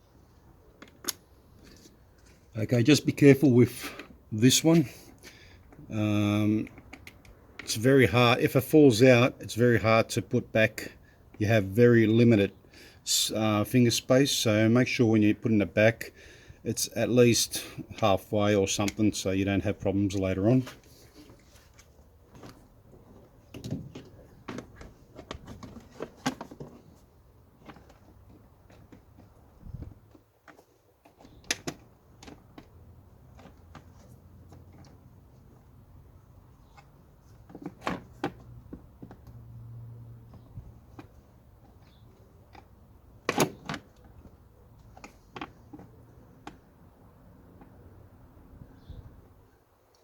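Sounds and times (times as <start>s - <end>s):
plastic parts clicking and knocking: 6.6s - 7.7s, 22.3s - 35.7s, 36.6s - 39.4s, 40.3s - 46.8s.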